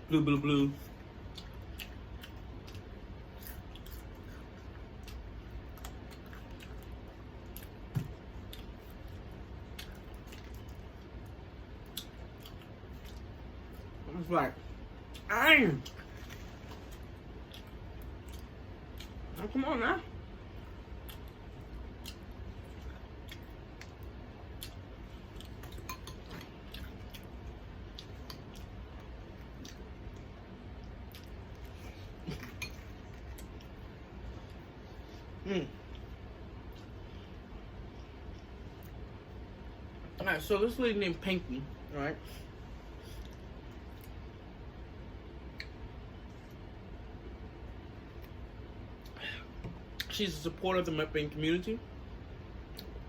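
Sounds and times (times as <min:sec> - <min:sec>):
low steady hum: 0:00.0 - 0:53.0
chewing crunchy food: 0:00.8 - 0:14.0, 0:15.0 - 0:19.4, 0:20.6 - 0:39.2.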